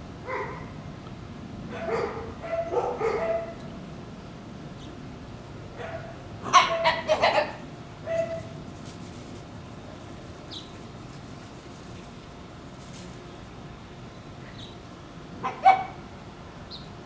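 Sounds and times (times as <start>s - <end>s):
puppies screaming and yipping: 6.4s - 8.8s.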